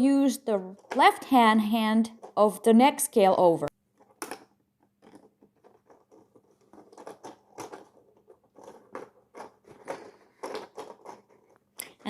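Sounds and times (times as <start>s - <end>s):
plastic scales clicking and rustling: 4.0s - 12.0s.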